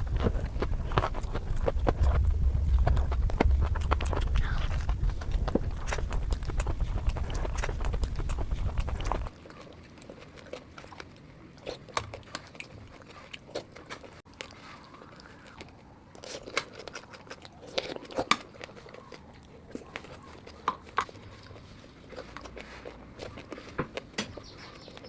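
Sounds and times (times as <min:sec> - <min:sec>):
heavy low rumble: 0:00.0 - 0:09.3
wet chewing clicks: 0:00.0 - 0:25.0.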